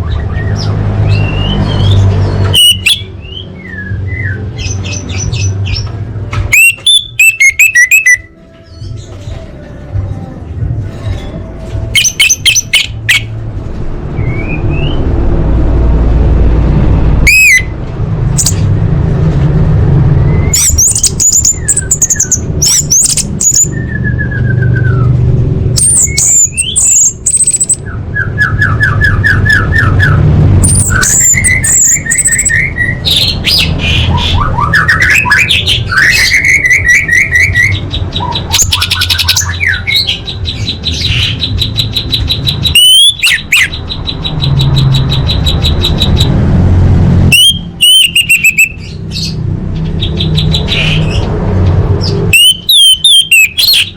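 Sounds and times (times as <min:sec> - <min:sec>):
thrush singing: 0:00.0 - 0:19.0
steady low rumble: 0:13.3 - 0:28.0.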